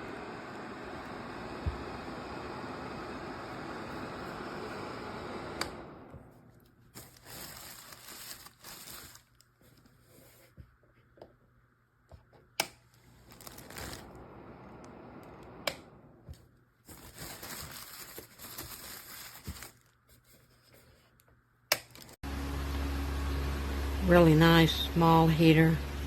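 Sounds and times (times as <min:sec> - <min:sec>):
rustling and crinkling handling: 0:06.4 - 0:11.2, 0:12.2 - 0:14.2, 0:16.3 - 0:22.2.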